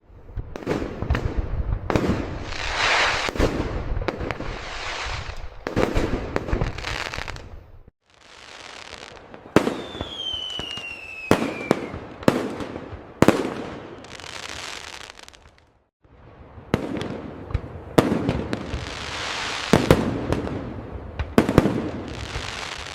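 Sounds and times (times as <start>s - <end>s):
whistling firework: 0.6s - 7.5s, 8.1s - 15.4s, 18.0s - 20.4s
firework bangs: 0.6s - 15.5s, 16.6s - 22.9s
firework crackling and fizzing: 0.6s - 15.7s, 18.0s - 20.5s, 21.2s - 22.9s.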